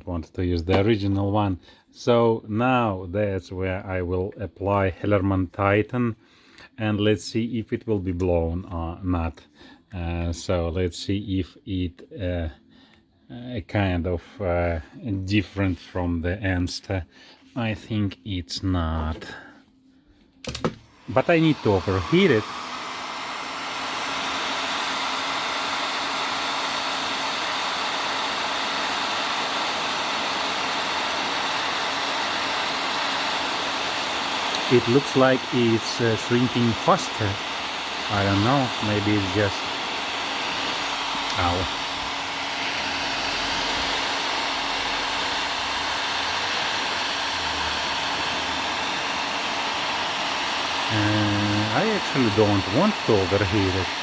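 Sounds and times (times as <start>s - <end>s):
heat gun blowing air: 20.4s - 54.0s.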